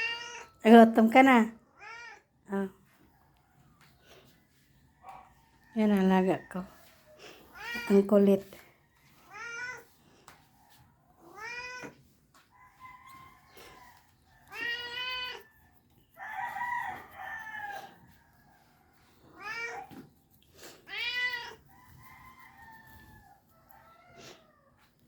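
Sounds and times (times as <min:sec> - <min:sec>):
cat meowing: 0:00.0 - 0:00.6, 0:01.8 - 0:02.2, 0:11.2 - 0:12.0, 0:14.5 - 0:15.5, 0:20.9 - 0:21.6.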